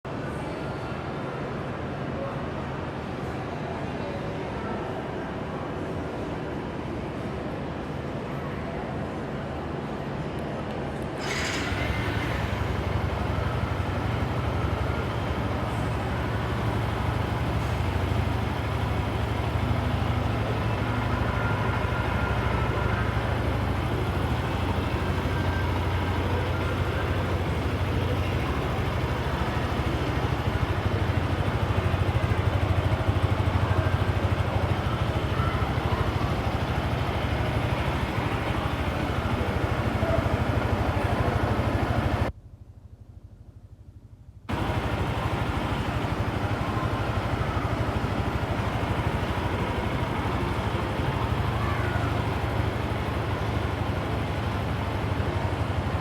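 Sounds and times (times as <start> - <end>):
motorcycle engine idling: 11.2 - 56.0.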